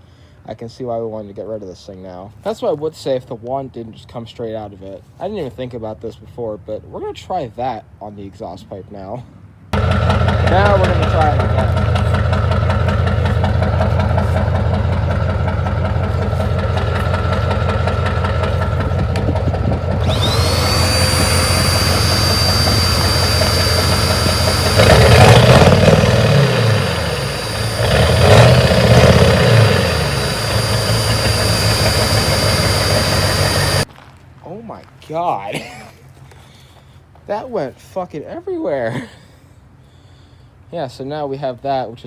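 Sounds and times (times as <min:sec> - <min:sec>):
diesel engine idling and revving: 0:09.8 - 0:33.9
vacuum cleaner motor whine: 0:09.8 - 0:33.9.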